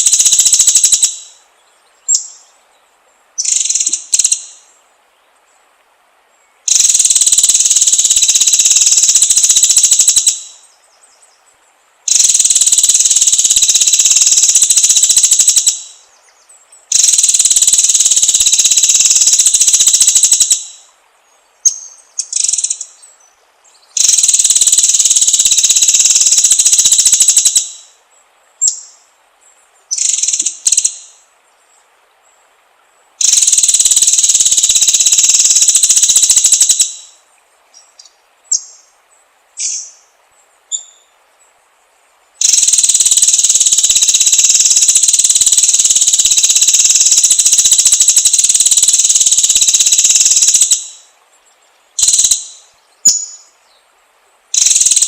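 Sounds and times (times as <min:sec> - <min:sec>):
bird singing rapid song: 0:00.0 - 0:05.6, 0:06.3 - 0:32.4, 0:33.2 - 0:41.2, 0:42.4 - 0:53.9.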